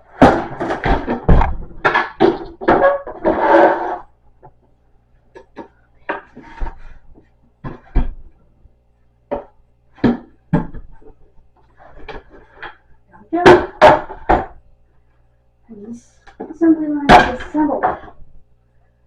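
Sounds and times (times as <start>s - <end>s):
wooden panels knocking and clacking: 0.1s - 4.6s, 13.4s - 14.6s.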